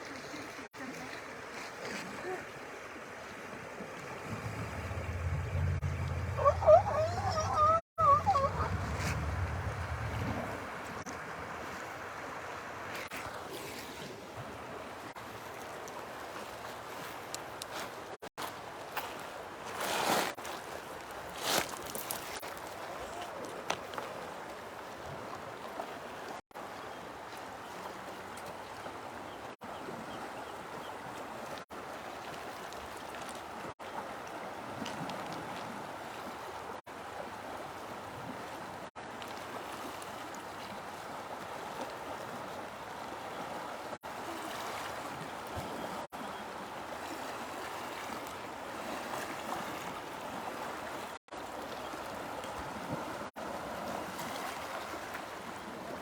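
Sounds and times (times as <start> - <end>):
running water rushing: 0.0 - 29.6.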